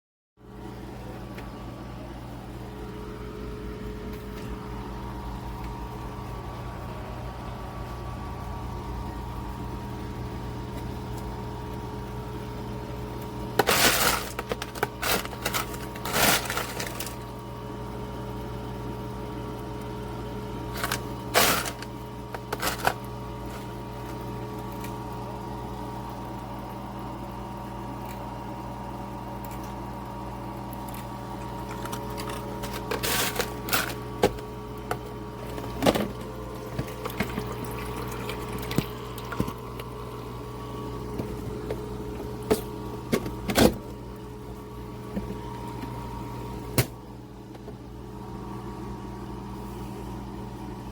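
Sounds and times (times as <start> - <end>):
ice maker humming: 0.4 - 50.9
ice clattering and cracking: 13.6 - 17.2, 20.7 - 23.7, 31.6 - 34.1.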